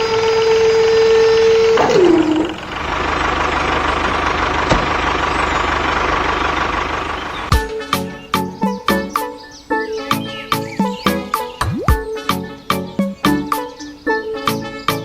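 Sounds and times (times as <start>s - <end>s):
horn-like tone sliding down: 0.0s - 2.6s
engine running hum: 0.0s - 9.3s.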